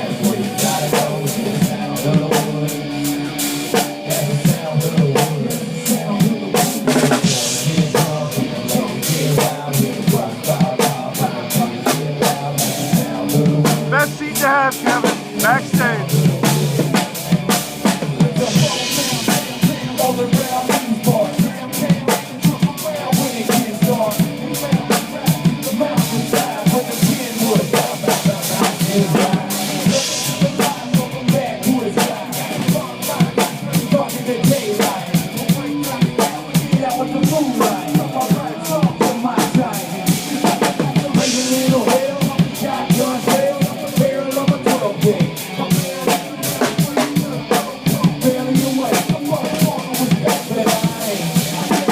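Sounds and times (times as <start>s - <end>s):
drum kit beat: 13.3s - 22.8s, 23.9s - 51.9s
live concert music: 13.4s - 16.6s.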